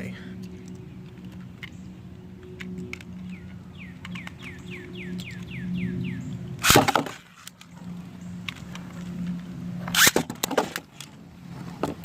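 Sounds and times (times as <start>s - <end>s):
steady low hum: 0.0s - 12.0s
launcher sharp rip: 6.6s - 7.2s.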